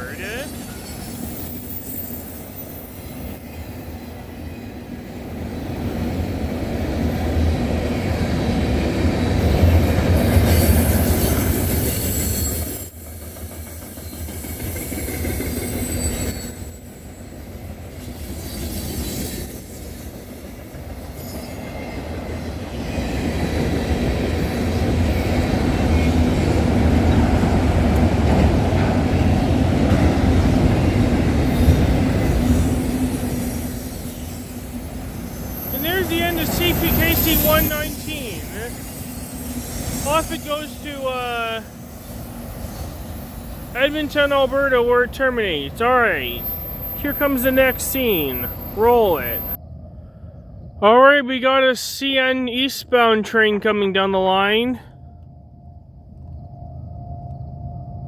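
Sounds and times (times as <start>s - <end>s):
faint high wheel squeal: 0.0s - 26.8s, 31.5s - 49.6s
train wheels rumbling on rail: 0.0s - 49.6s.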